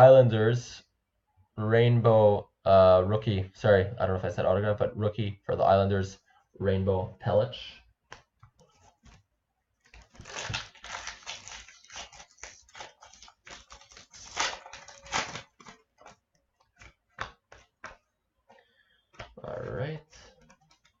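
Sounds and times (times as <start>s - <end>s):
foil card pack crinkling: 9.8s - 17.0s.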